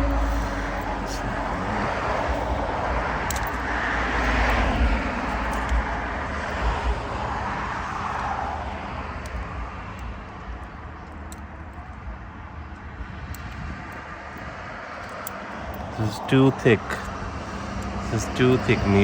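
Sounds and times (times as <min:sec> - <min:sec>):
wind rumble on microphone: 0:00.0 - 0:16.1
distant engine: 0:00.0 - 0:19.0.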